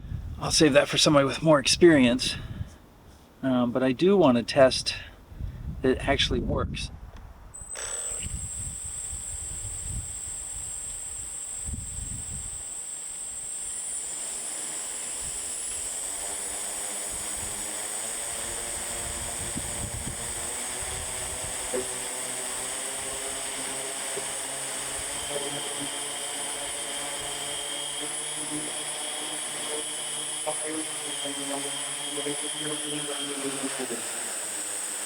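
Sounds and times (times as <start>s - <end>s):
high motor whine: 7.5s - 35.0s
drone propellers whirring: 7.6s - 35.0s.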